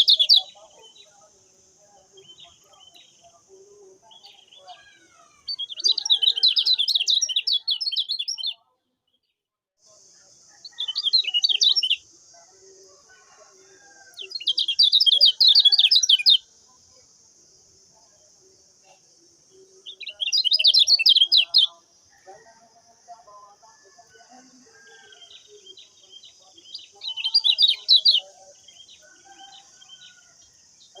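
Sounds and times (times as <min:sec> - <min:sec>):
bird chattering twitters: 0:00.0 - 0:01.0, 0:14.2 - 0:16.4, 0:19.9 - 0:21.7, 0:25.2 - 0:29.0.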